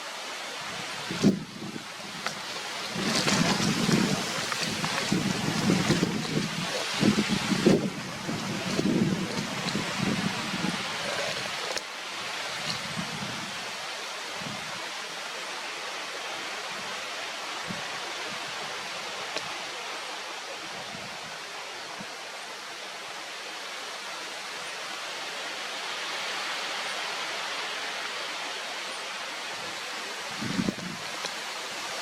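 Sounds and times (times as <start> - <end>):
steady rushing hiss: 0.0 - 32.0.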